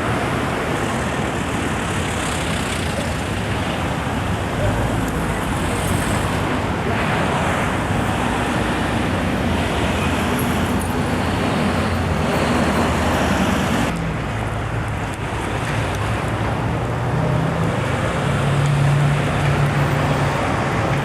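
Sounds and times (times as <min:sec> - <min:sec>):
road traffic with engine hum: 0:00.0 - 0:21.0.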